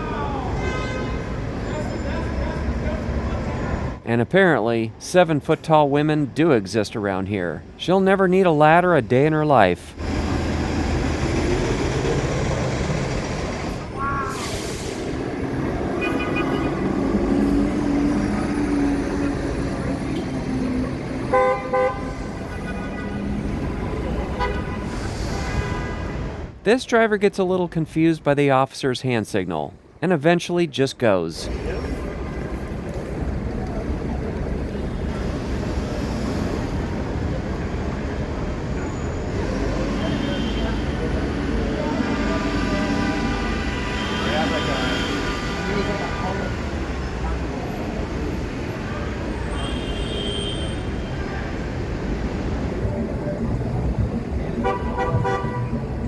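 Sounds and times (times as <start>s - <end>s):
traffic rumble: 0.0s - 56.0s
heavy engine low drone: 9.9s - 21.4s
short high squeal: 13.9s - 15.2s
sharp hiss: 14.3s - 15.2s.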